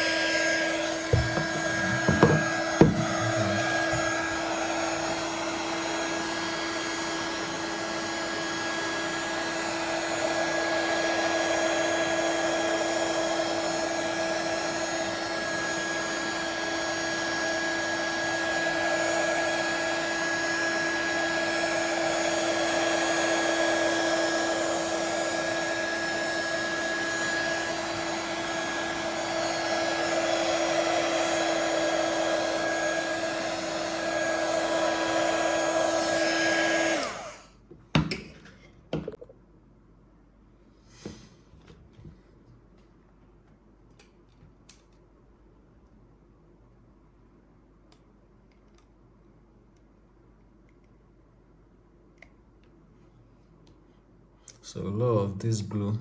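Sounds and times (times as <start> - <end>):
hot air gun blowing: 0.0 - 6.1, 14.5 - 37.5
light knocks: 1.1 - 3.2.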